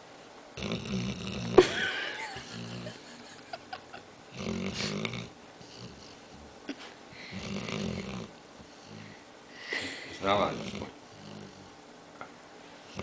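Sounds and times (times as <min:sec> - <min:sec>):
dog snoring: 0:00.6 - 0:01.7, 0:02.4 - 0:03.0, 0:04.3 - 0:06.5, 0:07.2 - 0:09.2, 0:10.2 - 0:11.8.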